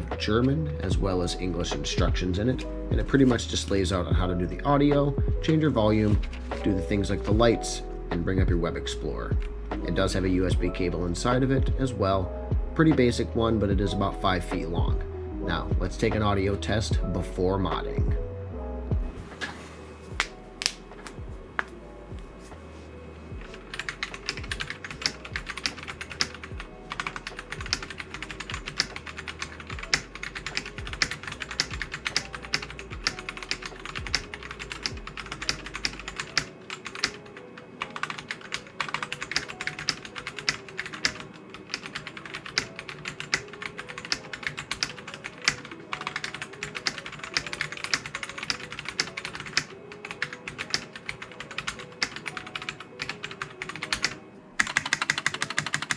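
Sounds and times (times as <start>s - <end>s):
mechanical keyboard typing: 23.4s - 37.2s, 37.9s - 55.9s.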